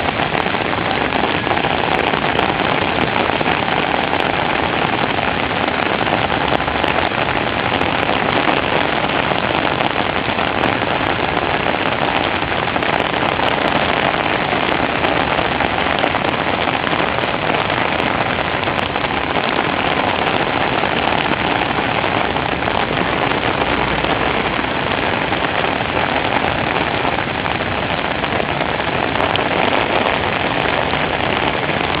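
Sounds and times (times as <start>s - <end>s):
heavy rain falling: 0.0s - 32.0s.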